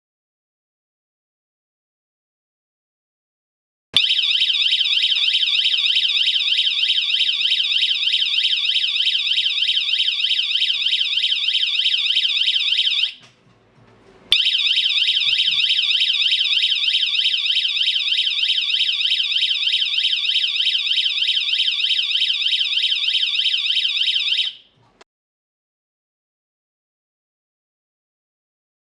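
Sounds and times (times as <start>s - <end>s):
warbling electronic alarm: 4.0s - 13.2s, 14.3s - 24.6s.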